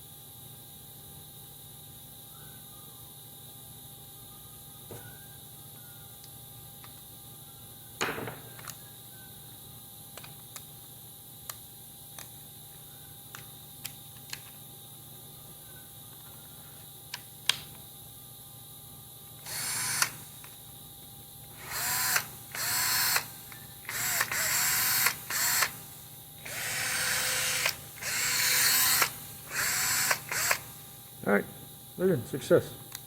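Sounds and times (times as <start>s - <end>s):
cordless drill whirring: 19.4s - 20.3s, 21.5s - 30.8s
sharp clicks: 26.4s - 30.7s.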